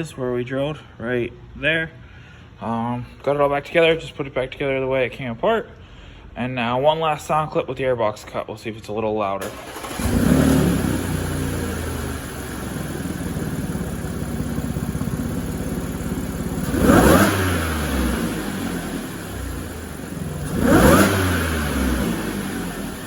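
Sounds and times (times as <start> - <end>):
car engine idling and revving: 9.4 - 23.0.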